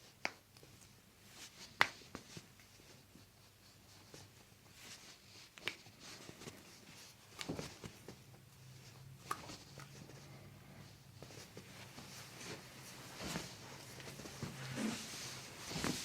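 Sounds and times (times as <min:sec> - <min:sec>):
hands rustling on skin: 0:00.2 - 0:16.0.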